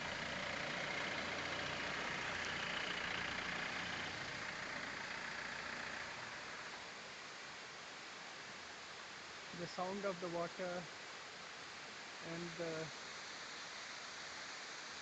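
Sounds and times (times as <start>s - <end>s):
vehicle engine idling: 0.0s - 7.1s
waterfall gushing: 0.0s - 15.0s.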